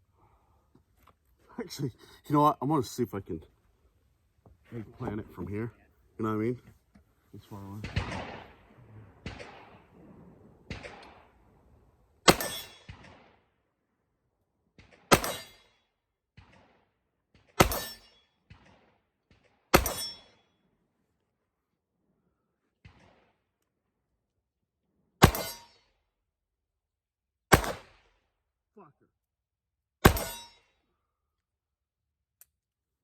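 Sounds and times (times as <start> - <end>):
gunshots with ringing tail: 7.7 - 13.5, 14.8 - 15.8, 16.4 - 20.5, 25.2 - 25.8, 27.5 - 28.2, 30.0 - 30.6.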